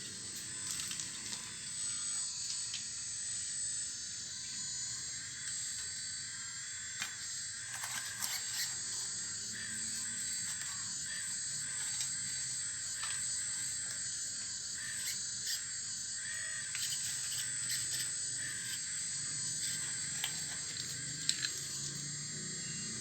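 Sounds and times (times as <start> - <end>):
electric motor whine: 0.0 - 23.0.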